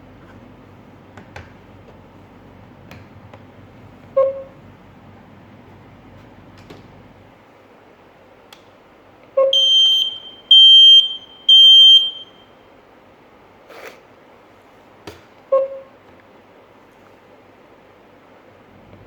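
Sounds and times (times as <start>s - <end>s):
high-pitched alarm beeps: 9.6s - 12.4s.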